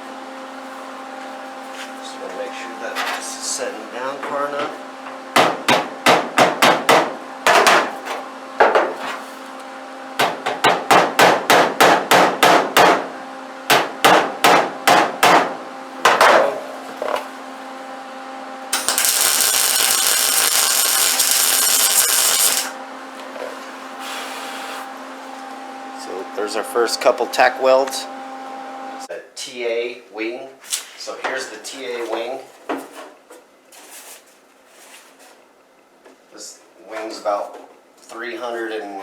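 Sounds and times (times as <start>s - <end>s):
welder crackling hiss: 18.8s - 22.8s.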